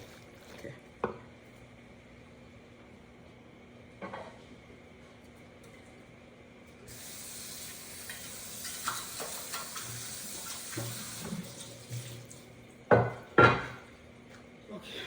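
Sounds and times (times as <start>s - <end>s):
tap water running into sink: 6.9s - 13.1s.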